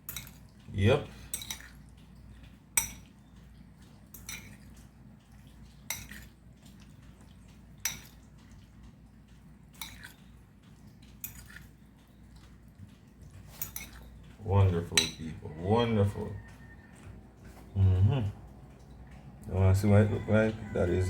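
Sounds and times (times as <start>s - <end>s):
cutlery scraping a bowl: 1.3s - 1.8s, 4.1s - 4.7s, 5.9s - 6.3s, 11.2s - 11.7s, 13.4s - 14.2s, 14.8s - 17.2s.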